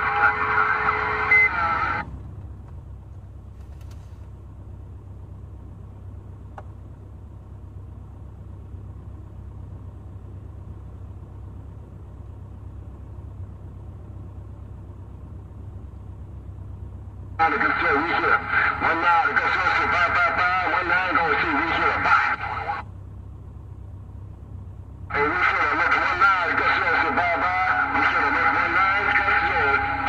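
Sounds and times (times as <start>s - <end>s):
garbled radio signal with whistling: 0.0s - 2.1s, 17.4s - 22.8s, 25.1s - 30.0s
low vehicle rumble: 0.0s - 30.0s.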